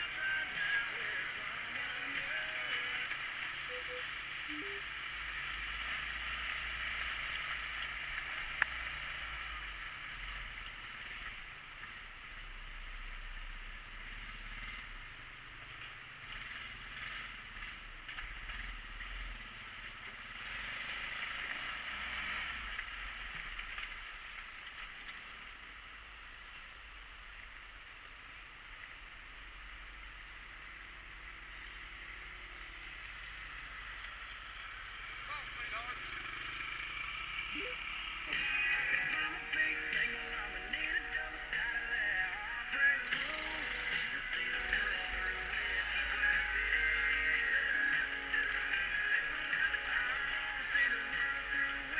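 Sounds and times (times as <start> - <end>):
off-road vehicle engine: 0.0 - 51.9.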